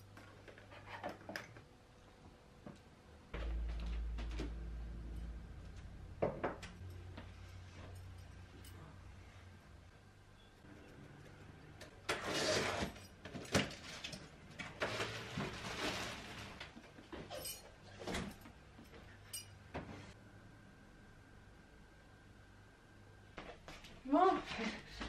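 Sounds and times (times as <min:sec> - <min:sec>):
rustling or scraping: 0:12.1 - 0:18.2
faint steady hum: 0:16.3 - 0:25.0.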